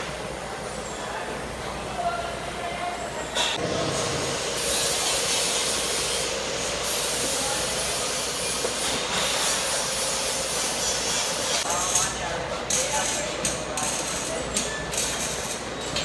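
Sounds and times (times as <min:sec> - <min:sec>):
welding arc crackling and hissing: 0:04.0 - 0:15.9.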